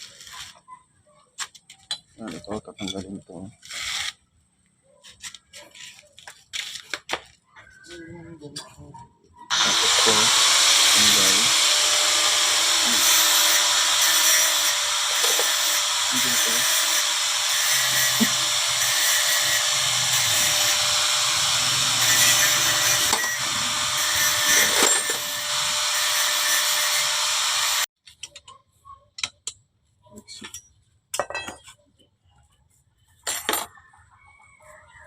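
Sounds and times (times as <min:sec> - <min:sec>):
power tool running: 0:09.5 - 0:27.9
metal clinks and knocks: 0:30.3 - 0:31.8.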